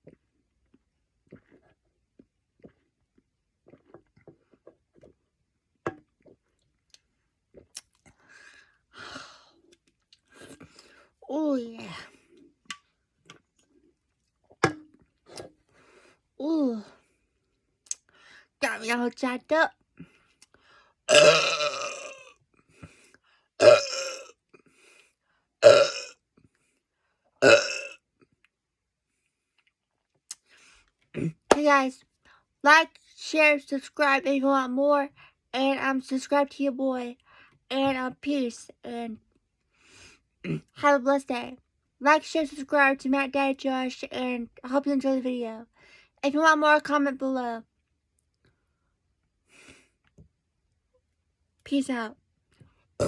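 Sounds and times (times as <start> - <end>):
person gulping a drink: 0.0 - 5.3, 21.1 - 23.0, 23.6 - 24.7, 25.6 - 26.1, 27.4 - 28.4
man belching loudly: 21.1 - 22.2, 23.6 - 24.3, 25.6 - 26.1, 27.4 - 27.9.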